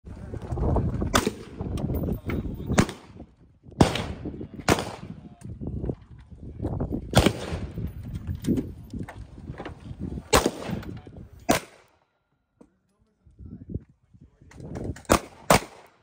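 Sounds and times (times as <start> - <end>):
gunshots: 1.1 - 1.6, 2.7 - 3.2, 3.8 - 5.2, 7.1 - 7.8, 10.3 - 11.9, 15.0 - 16.0.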